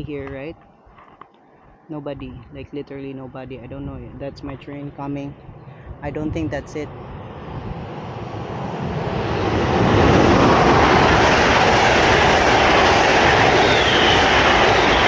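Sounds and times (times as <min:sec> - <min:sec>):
faint high whine: 0:00.0 - 0:15.0
passenger train passing: 0:06.3 - 0:15.0.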